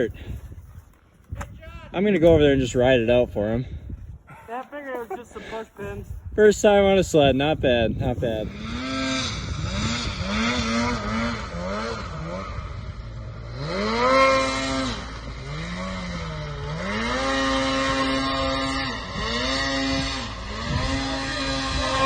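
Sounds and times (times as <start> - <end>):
snowmobile engine revving: 7.4 - 22.0.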